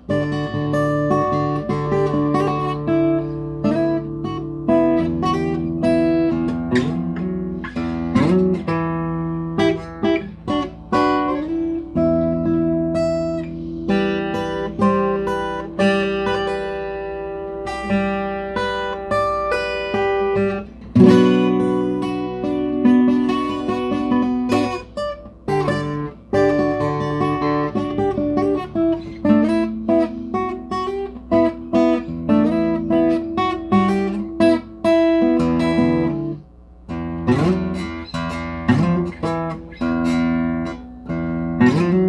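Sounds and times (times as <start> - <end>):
solo guitar playing: 0.0 - 42.0.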